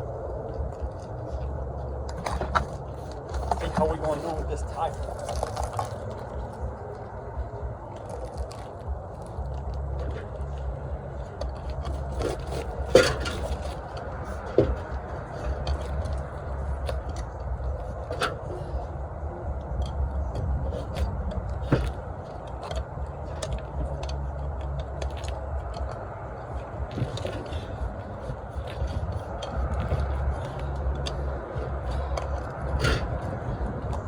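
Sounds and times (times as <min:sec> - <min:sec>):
low rumble: 0:00.0 - 0:34.0
metal clanks and scrapes: 0:11.4 - 0:18.9, 0:26.5 - 0:34.0.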